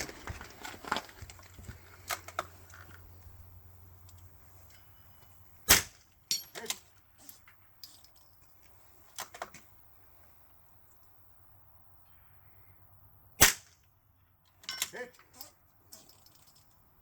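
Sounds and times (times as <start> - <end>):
rifle shot: 5.7 - 6.1, 13.4 - 13.8.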